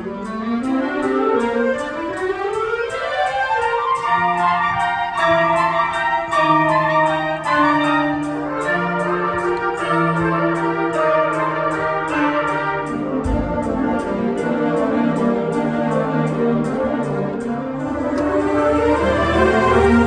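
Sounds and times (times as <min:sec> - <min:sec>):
school band playing: 0:00.0 - 0:20.0
high percussion beat: 0:13.0 - 0:16.5.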